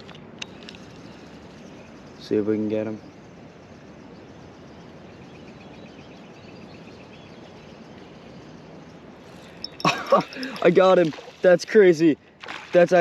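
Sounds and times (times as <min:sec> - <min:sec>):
faint river noise: 0:00.0 - 0:13.0
faint bird chirps: 0:00.8 - 0:10.6.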